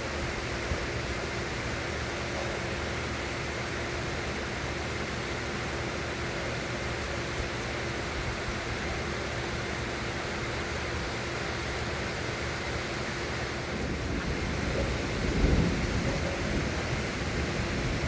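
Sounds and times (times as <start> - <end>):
heavy rain: 0.0 - 18.0
low rumble of thunder: 13.6 - 18.0.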